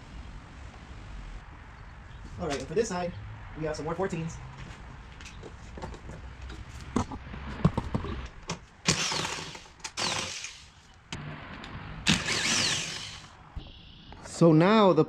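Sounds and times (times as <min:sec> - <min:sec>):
impact wrench whining: 0:08.8 - 0:13.7.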